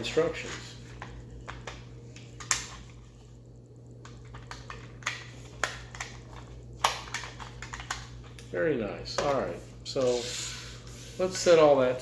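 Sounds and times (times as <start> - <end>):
steady low hum: 0.0 - 12.0
toy and packaging clicking: 4.0 - 8.2.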